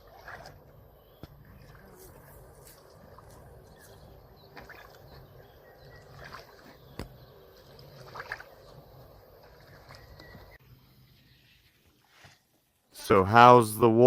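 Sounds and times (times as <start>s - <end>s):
water sloshing and splashing: 0.0s - 10.6s.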